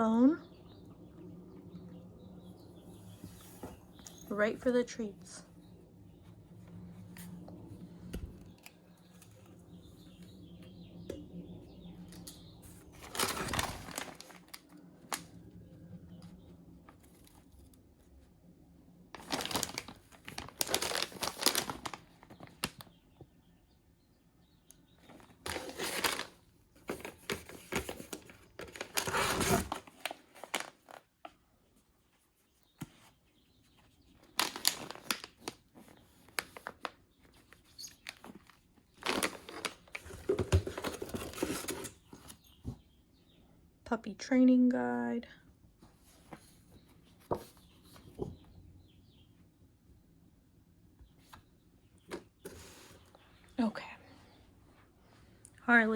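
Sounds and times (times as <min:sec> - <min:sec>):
packaging crinkling and tearing: 0:12.2 - 0:15.3, 0:19.1 - 0:22.9, 0:25.1 - 0:31.1, 0:34.2 - 0:42.1.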